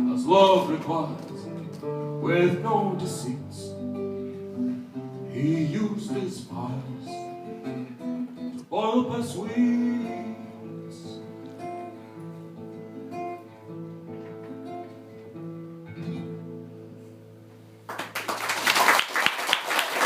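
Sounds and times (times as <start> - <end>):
guitar picking folk song: 0.0 - 17.9
audience applause: 17.9 - 20.0.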